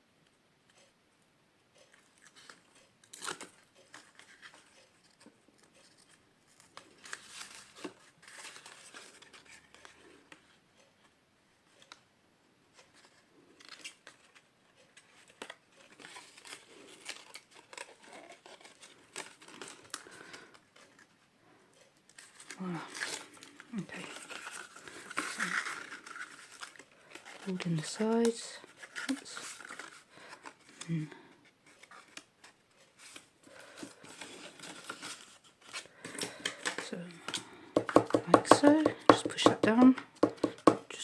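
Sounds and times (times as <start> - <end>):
paper rustling and crinkling: 3.2 - 10.4, 12.8 - 21.2, 22.1 - 30.9, 31.5 - 37.6
sharp clicks and taps: 37.8 - 40.9.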